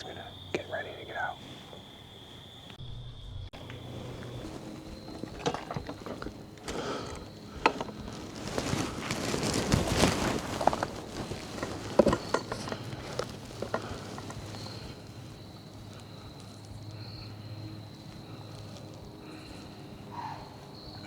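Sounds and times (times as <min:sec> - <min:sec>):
rustling dry leaves: 0:03.6 - 0:21.0.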